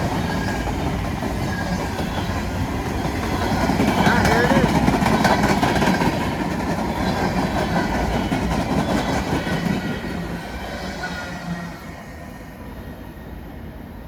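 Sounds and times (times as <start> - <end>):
freight train wheels clattering: 0.0 - 10.3.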